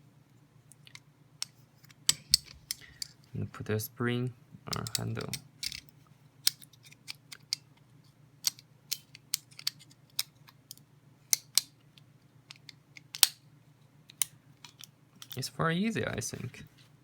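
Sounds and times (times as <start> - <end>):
metallic knife parts clicking: 4.7 - 7.6, 8.4 - 11.7.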